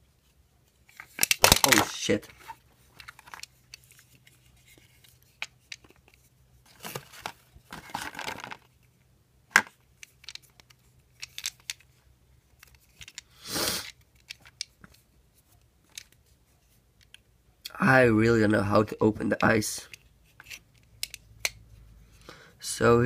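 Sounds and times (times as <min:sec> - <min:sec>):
plastic packaging rustling: 0:06.7 - 0:08.7.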